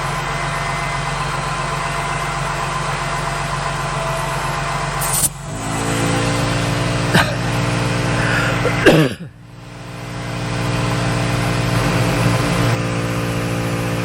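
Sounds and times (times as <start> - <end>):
air compressor running: 0.0 - 14.0
van engine idling: 0.0 - 14.0
sharp click: 5.0 - 5.4.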